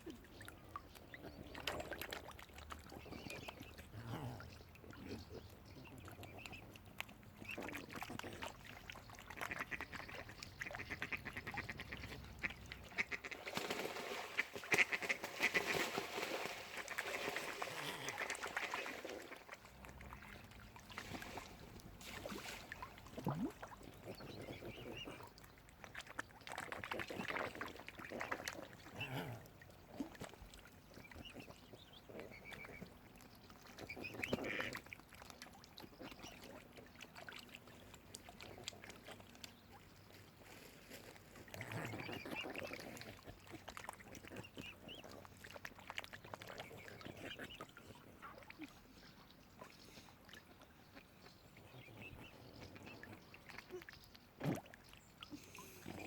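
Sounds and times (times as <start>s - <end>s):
waterfowl calling: 9.4s - 16.0s.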